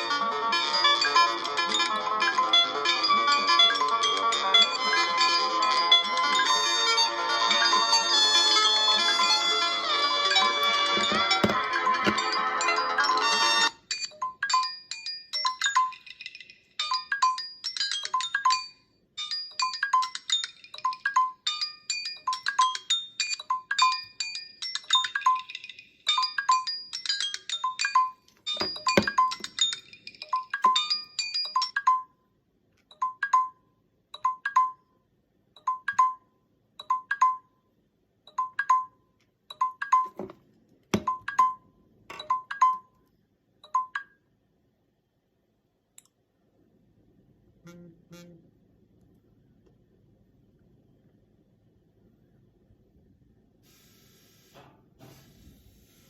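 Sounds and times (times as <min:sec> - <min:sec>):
smartphone ringtones: 0:10.7 - 0:32.1.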